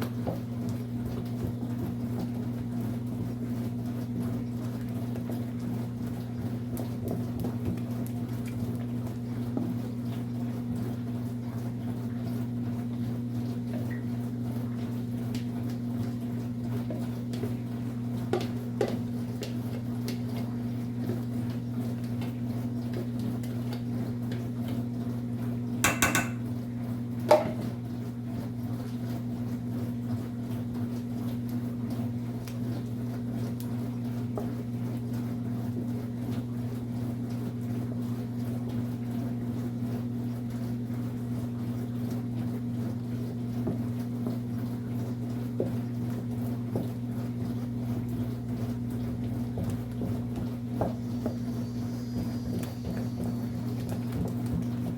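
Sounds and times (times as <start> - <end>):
dishes and utensils clinking: 25.8 - 26.4
dishes clattering: 25.8 - 26.4.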